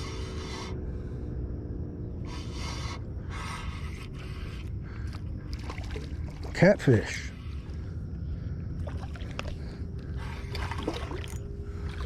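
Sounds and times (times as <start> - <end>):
low rumble: 7.2 - 12.0.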